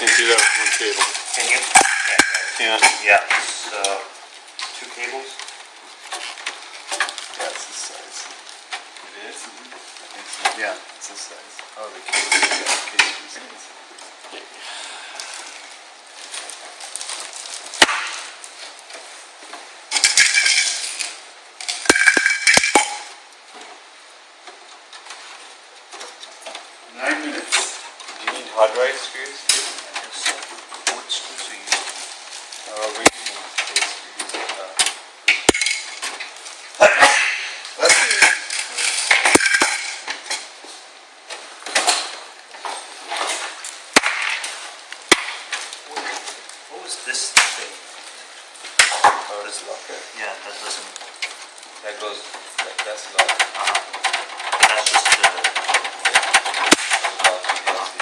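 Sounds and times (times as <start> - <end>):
screws and metal parts clinking: 0.0 - 3.0
screws rattling and clinking: 0.0 - 3.0, 19.9 - 23.2, 37.8 - 40.5
sharp knocks: 17.8 - 18.4, 21.8 - 23.2, 44.0 - 45.6.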